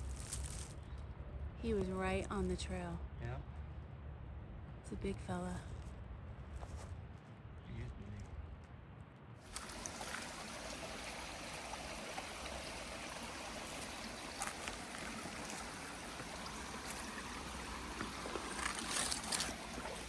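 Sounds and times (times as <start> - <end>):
running water stream: 9.4 - 20.0.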